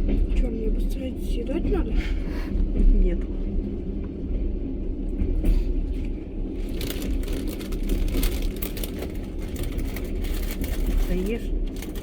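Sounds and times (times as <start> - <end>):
train rumble inside carriage: 0.0 - 12.0
crinkling wrapper rustle: 6.6 - 12.0.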